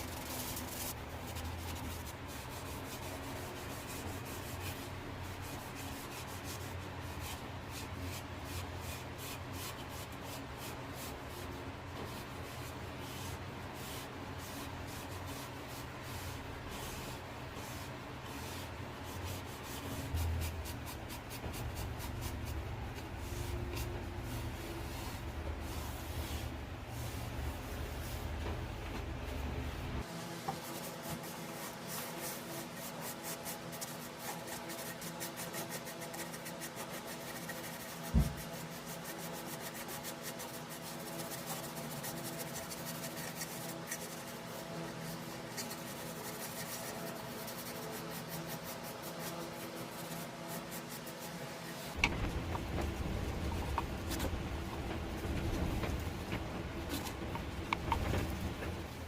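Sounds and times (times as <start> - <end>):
steady hum: 0.0 - 36.5, 37.2 - 59.0
wood being sanded: 30.0 - 59.0
knock: 38.1 - 38.4.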